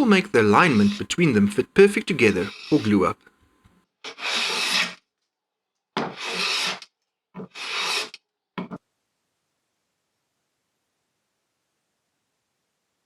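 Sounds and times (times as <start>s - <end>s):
hand plane shaving wood: 0.0s - 3.1s, 4.1s - 5.0s, 6.0s - 6.8s, 7.4s - 8.2s.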